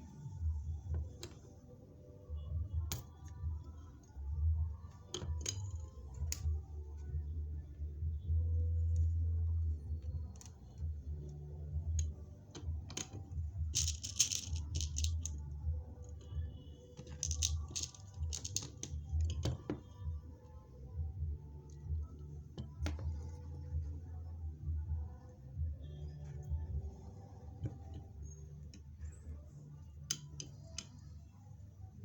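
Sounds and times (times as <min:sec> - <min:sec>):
metal beads clicking and rattling: 0:13.7 - 0:15.4, 0:17.0 - 0:19.4.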